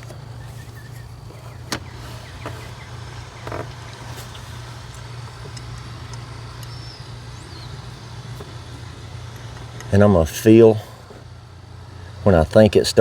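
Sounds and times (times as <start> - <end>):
faint metallic clicks: 0.0 - 7.7
low hum: 0.0 - 13.0.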